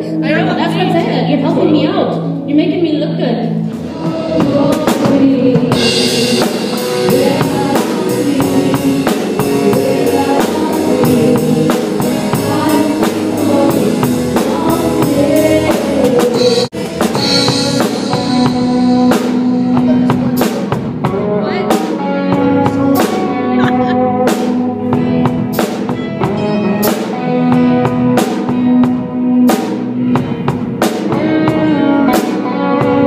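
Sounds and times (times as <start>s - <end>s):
live band playing worship song: 0.0s - 33.0s
drum kit beat: 0.2s - 33.0s.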